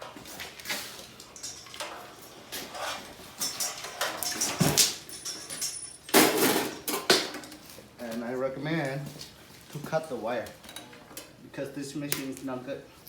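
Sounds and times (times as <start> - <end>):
metallic clattering and scraping: 0.0 - 7.6.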